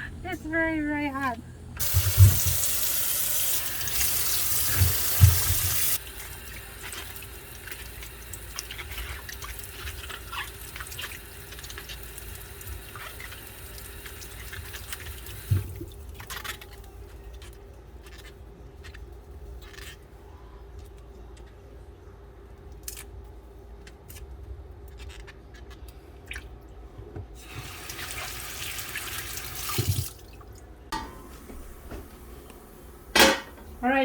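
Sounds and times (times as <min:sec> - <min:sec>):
water running from a tap: 0:01.8 - 0:16.0, 0:27.4 - 0:30.4.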